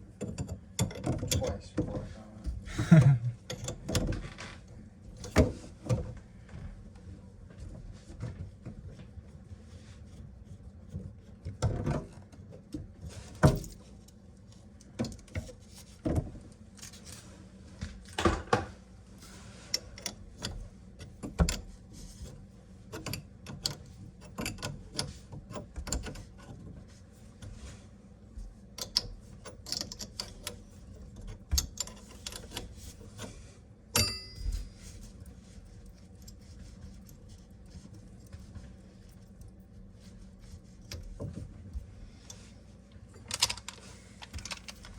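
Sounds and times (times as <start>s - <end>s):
small parts clicking and rattling: 28.8s - 33.2s, 43.1s - 44.9s
ringing metallic clink: 34.0s - 34.6s.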